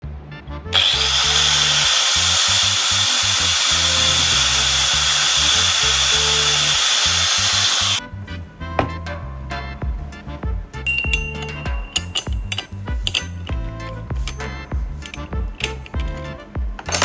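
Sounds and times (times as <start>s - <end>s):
background music with bass line: 0.0s - 17.0s
angle grinder running: 0.8s - 8.0s.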